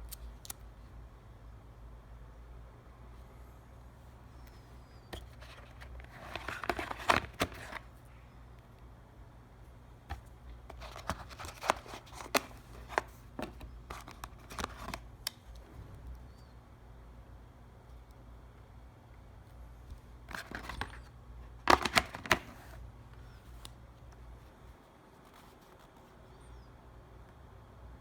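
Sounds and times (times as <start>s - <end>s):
packaging clicks and rustles: 5.2s - 7.9s, 10.1s - 15.5s, 20.3s - 22.8s.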